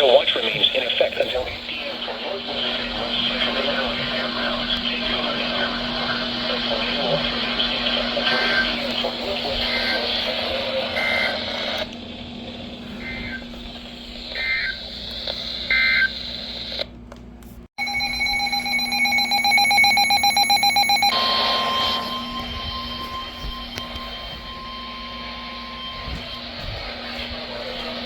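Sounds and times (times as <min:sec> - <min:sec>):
steady alarm tone: 0:00.6 - 0:11.8, 0:17.8 - 0:28.0
short electronic beeps: 0:17.8 - 0:26.3.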